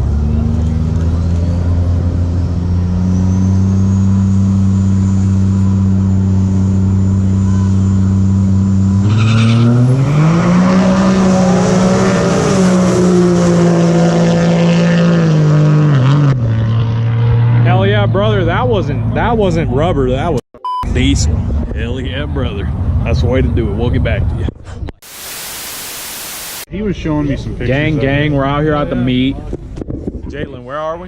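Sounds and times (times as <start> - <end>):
diesel truck engine revving: 0.0 - 20.3
turbo whine: 2.6 - 9.1, 25.0 - 26.7.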